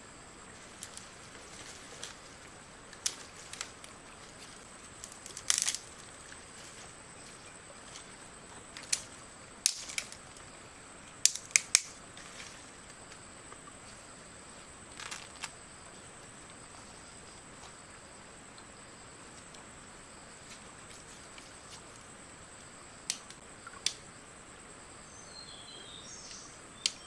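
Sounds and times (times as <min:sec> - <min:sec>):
short sharp clicks and snaps: 0:11.2 - 0:12.0, 0:23.1 - 0:24.0.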